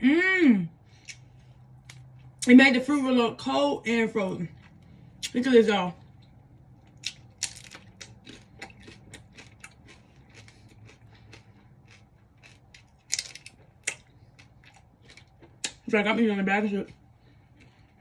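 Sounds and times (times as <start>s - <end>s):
crisp chewing crunches: 6.1s - 15.9s.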